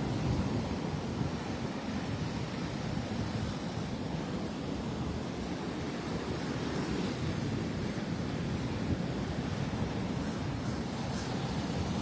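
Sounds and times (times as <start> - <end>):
wind buffeting microphone: 8.6 - 12.0.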